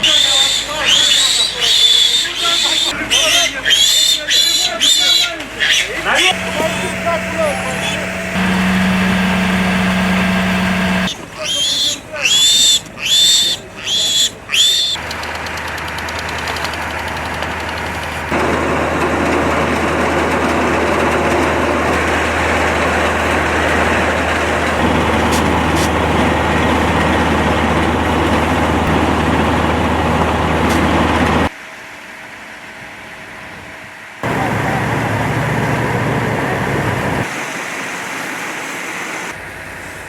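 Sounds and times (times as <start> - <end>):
piglets squealing: 0.0 - 8.5, 11.0 - 15.0
vehicle engine running: 6.2 - 11.4, 15.0 - 31.5, 34.2 - 37.3.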